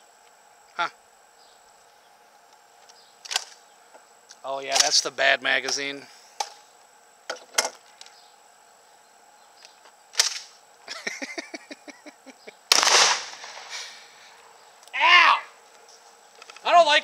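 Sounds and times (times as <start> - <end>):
shotgun handling clicks: 2.8 - 3.6, 9.6 - 10.5
loud gunshot: 12.7 - 13.9.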